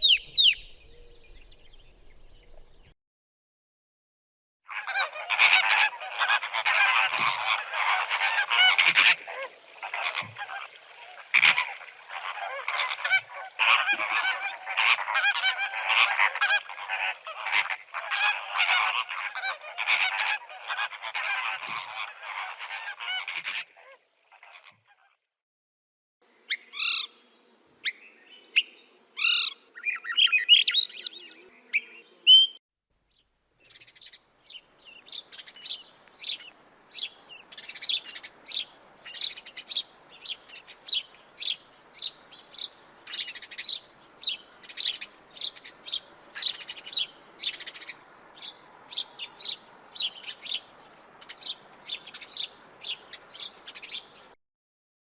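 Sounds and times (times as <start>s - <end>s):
short high bird chirps: 0.0s - 1.2s, 27.8s - 32.6s
birds calling: 0.0s - 2.9s, 11.4s - 23.6s, 26.3s - 54.4s.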